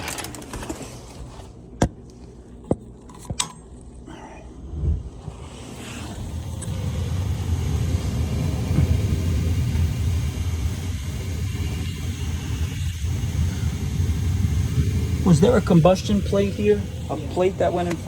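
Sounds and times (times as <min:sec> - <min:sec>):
gas burner low rumble: 0:04.2 - 0:18.0.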